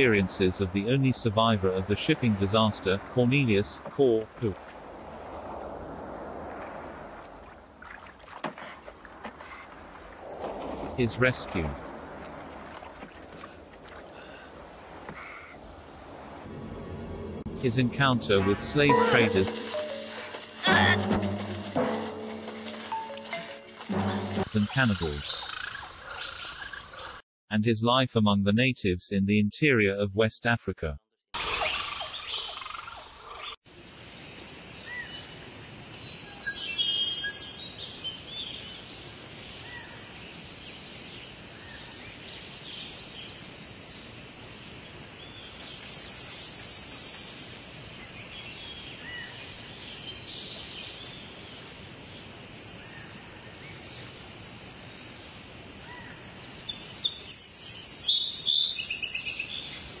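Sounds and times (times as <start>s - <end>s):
steady background hiss: 0.0s - 7.8s, 9.8s - 20.5s, 33.7s - 60.0s
birds chirping and calling: 18.9s - 27.2s.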